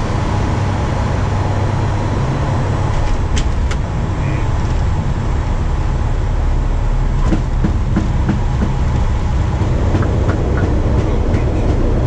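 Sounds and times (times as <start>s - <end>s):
aircraft rolling on runway: 0.0s - 12.0s.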